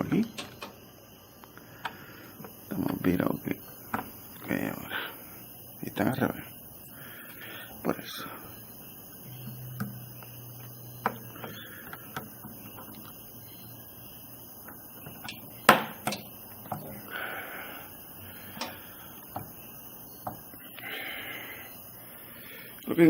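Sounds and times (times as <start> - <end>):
plastic clicks and knocks: 0.2 - 0.8, 11.0 - 13.2, 14.6 - 16.9, 18.6 - 19.6
retention clips snapping shut: 0.2 - 0.8.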